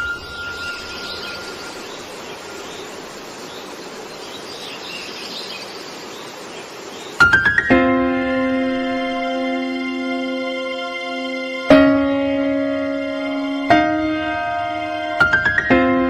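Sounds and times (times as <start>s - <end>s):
bird chirps: 0.0s - 7.7s
insects hissing: 0.0s - 7.7s.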